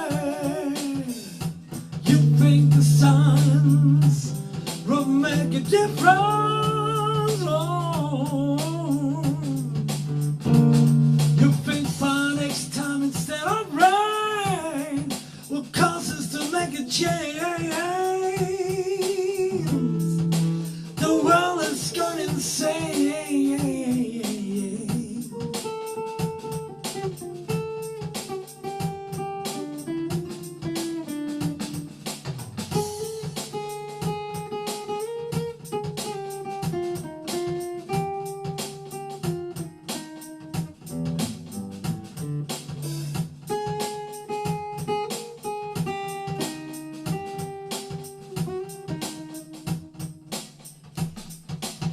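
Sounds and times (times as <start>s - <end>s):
person singing: 0.0s - 10.0s, 11.3s - 25.8s
soul band with electric guitar: 0.0s - 51.9s.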